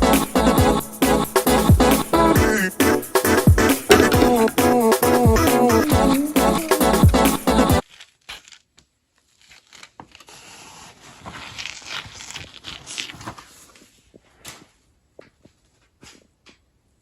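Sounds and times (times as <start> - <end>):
background music: 0.0 - 7.8
paper rustling and crinkling: 7.8 - 14.8.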